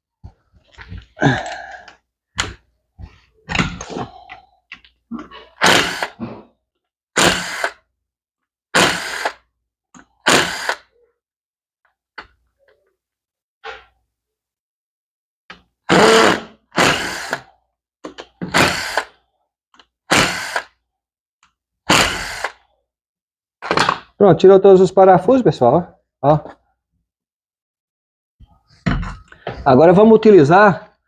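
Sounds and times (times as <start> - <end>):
power drill bursts: 5.6 - 6.2, 7.2 - 7.8, 8.7 - 9.4, 10.2 - 10.8, 15.9 - 17.4, 18.5 - 19.1, 20.1 - 20.7, 21.9 - 22.6.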